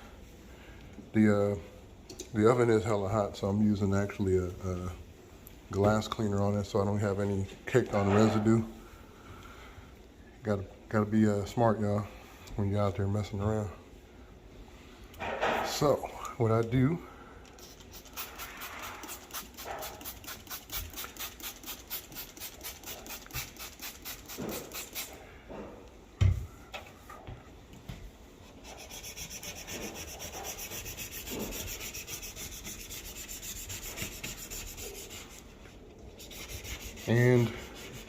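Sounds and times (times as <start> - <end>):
scrubbing on glass stovetop: 28.5 - 38.0.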